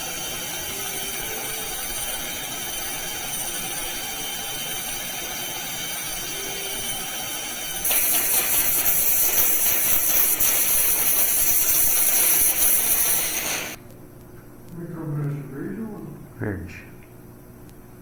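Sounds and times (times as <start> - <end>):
bright hiss of air: 0.0 - 13.8
dental equipment hissing: 0.0 - 13.8
faint high whine: 0.0 - 13.8.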